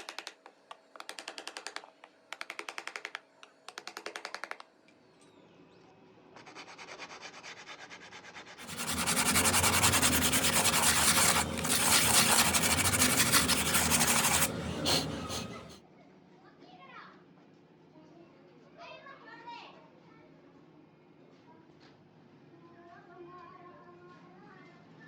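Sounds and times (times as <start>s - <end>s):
sanding with scratchy strokes: 6.4s - 15.8s.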